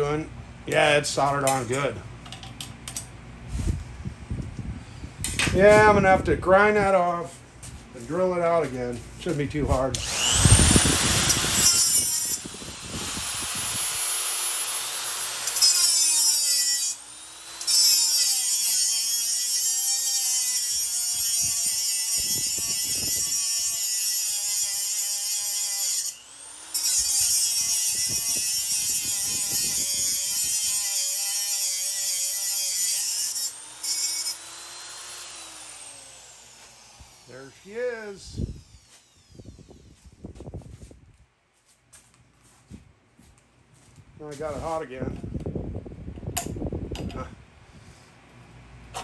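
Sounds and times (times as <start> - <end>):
rotary tool grinding metal: 9.3 - 40.1.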